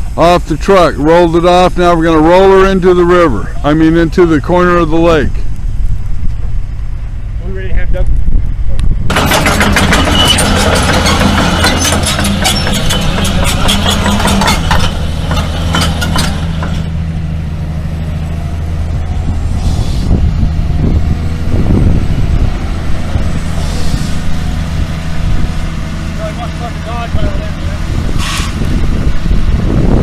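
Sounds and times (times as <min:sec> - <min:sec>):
heavy diesel engine running: 0:00.0 - 0:30.0
dense rattling clatter: 0:09.0 - 0:17.0.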